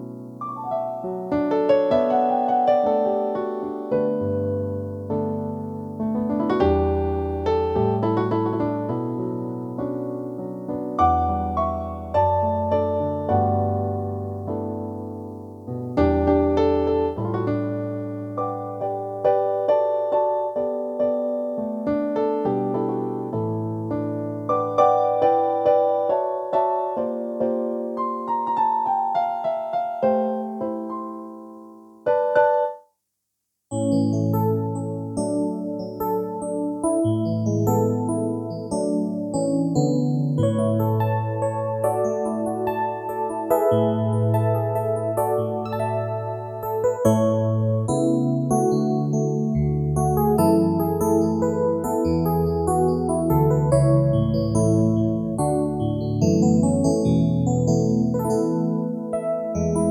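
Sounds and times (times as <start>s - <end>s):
digital piano melody: 0.0s - 32.9s, 33.7s - 59.9s.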